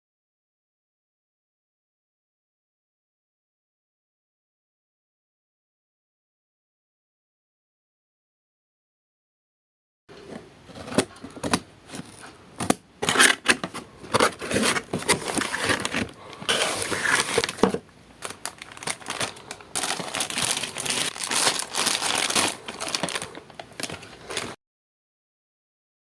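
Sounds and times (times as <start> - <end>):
crinkly plastic packaging rustling: 10.8 - 24.6.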